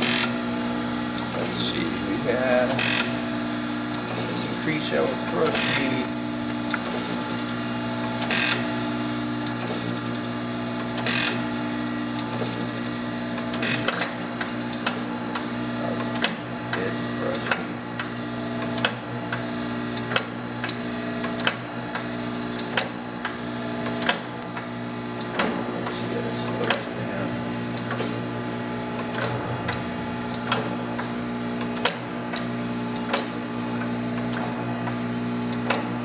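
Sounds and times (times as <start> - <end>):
grinder humming: 0.0 - 9.0, 28.9 - 31.3.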